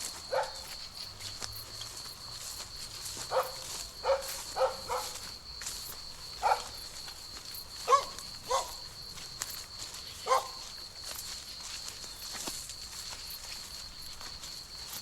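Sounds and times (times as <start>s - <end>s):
dog barking: 0.3s - 0.7s, 3.3s - 5.2s, 6.4s - 6.8s, 7.8s - 8.8s, 10.2s - 10.6s.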